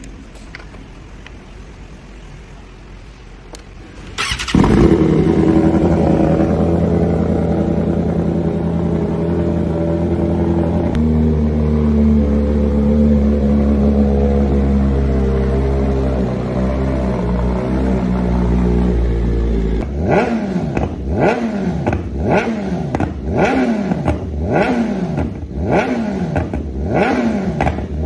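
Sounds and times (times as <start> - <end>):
click: 3.5 - 3.7
motorcycle engine idling: 3.8 - 20.0
motorcycle starter cranking: 4.0 - 5.4.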